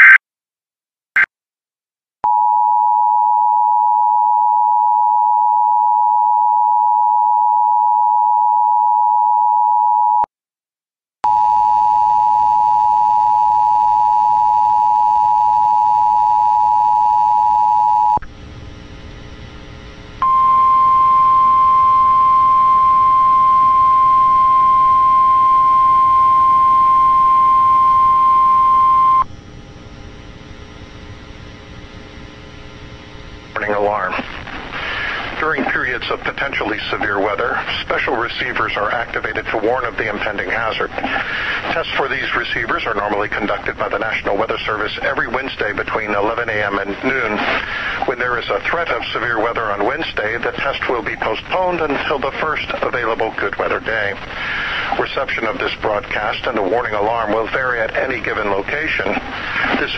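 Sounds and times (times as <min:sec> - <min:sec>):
single-pitch alarm tone: 0:02.2 - 0:10.3, 0:20.2 - 0:29.3
radio static: 0:33.4 - 0:59.9.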